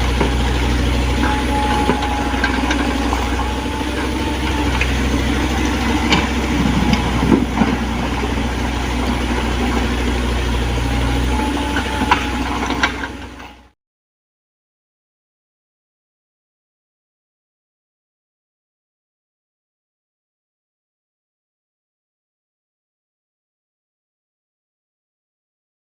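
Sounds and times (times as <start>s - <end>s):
excavator diesel engine running: 0.0s - 13.8s.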